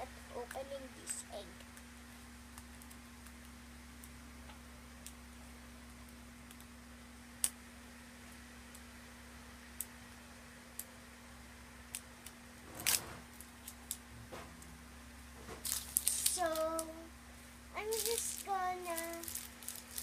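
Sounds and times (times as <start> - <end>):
packaging scraping rustle: 15.6 - 16.8, 17.8 - 20.0.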